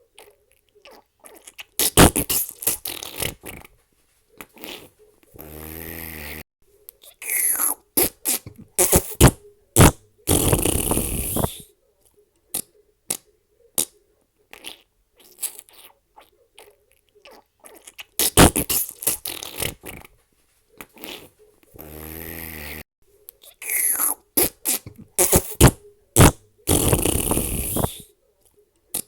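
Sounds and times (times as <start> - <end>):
fart sound effects: 1.8 - 3.7, 4.6 - 6.4, 7.2 - 11.6, 18.2 - 20.1, 21.0 - 22.8, 23.6 - 28.0.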